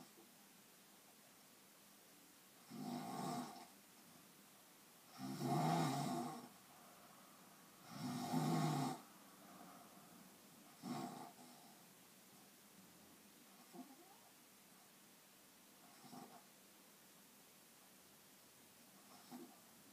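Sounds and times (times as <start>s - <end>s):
pitched snoring: 2.6s - 3.8s, 5.1s - 6.6s, 7.8s - 9.7s, 10.7s - 11.8s, 15.8s - 16.5s, 19.0s - 19.6s.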